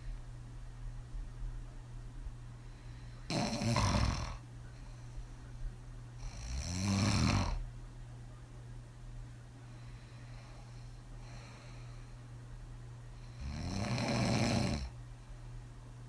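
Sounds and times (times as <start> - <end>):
woman snoring heavily: 3.3 - 4.4, 6.3 - 7.6, 13.3 - 14.9.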